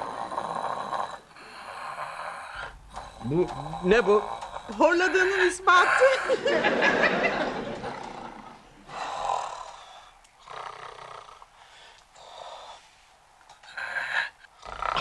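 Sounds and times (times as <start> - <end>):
man snoring: 0.0 - 6.4, 7.8 - 11.6, 13.7 - 15.0.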